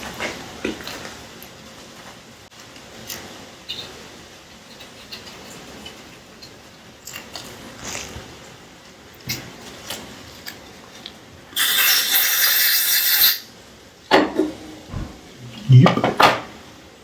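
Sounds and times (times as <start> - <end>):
loud steady hiss: 11.3 - 17.0.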